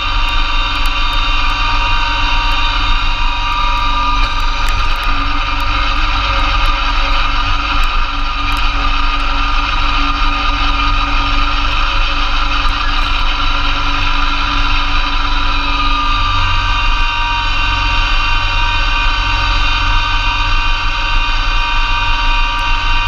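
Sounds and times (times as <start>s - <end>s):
snowblower through wet snow: 0.0s - 23.0s
tractor diesel engine running: 0.0s - 23.0s.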